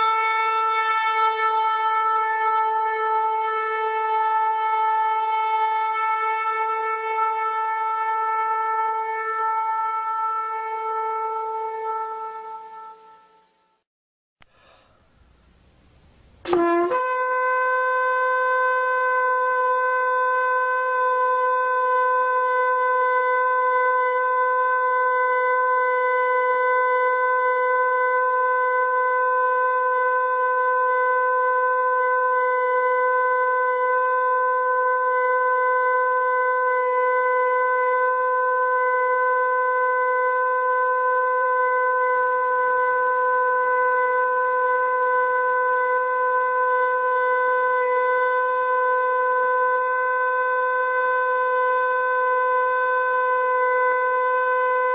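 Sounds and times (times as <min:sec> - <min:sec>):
shofar blast: 0:00.0 - 0:13.7, 0:16.4 - 0:54.9.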